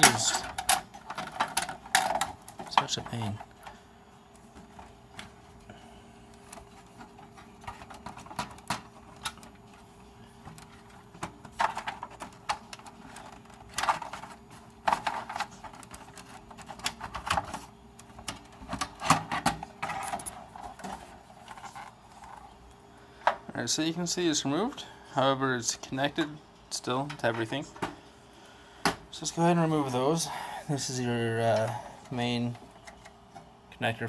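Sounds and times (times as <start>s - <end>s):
clicks and scraping inside computer case: 0.0s - 3.8s, 4.4s - 22.6s.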